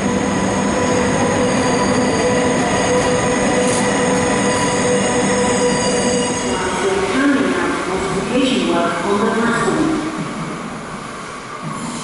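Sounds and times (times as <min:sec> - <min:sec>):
train whining tones: 0:00.0 - 0:09.0
train rushing rail noise: 0:00.0 - 0:12.0.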